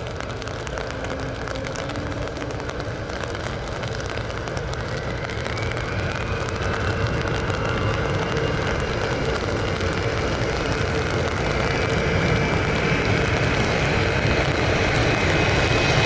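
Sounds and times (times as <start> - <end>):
jet engines rushing: 0.0 - 16.0
jet engine whine rising: 4.6 - 16.0.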